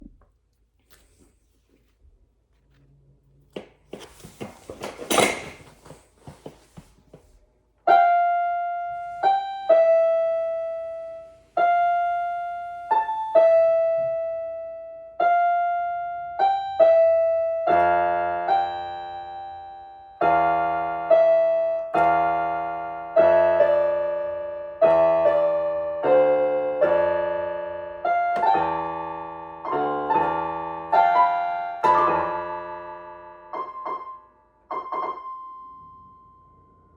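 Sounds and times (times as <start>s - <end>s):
rustling and knocking: 3.5s - 7.4s
slow piano melody: 7.8s - 36.9s
piano chords with low bass: 7.9s - 36.9s.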